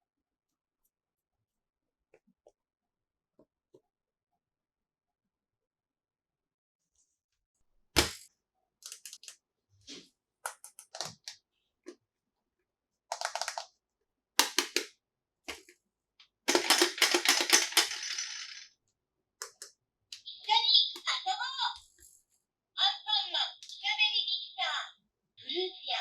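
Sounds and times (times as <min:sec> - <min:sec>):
toy pieces knocking: 0:13.1 - 0:13.7, 0:14.4 - 0:14.9, 0:16.5 - 0:18.8
plastic clicks and taps: 0:14.4 - 0:14.9
plastic pieces clattering: 0:16.5 - 0:18.7.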